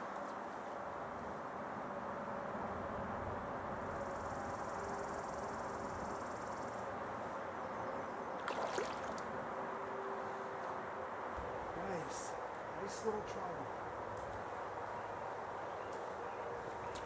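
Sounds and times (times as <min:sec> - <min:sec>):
high insect trill: 0:03.9 - 0:06.8
small stream flowing: 0:08.4 - 0:09.6.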